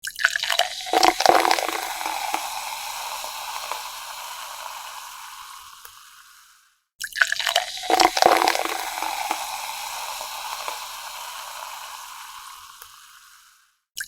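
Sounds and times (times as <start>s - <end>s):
liquid splashing: 0.5s - 5.5s, 7.4s - 13.0s
fizzing water hiss: 0.8s - 6.6s, 7.6s - 13.6s.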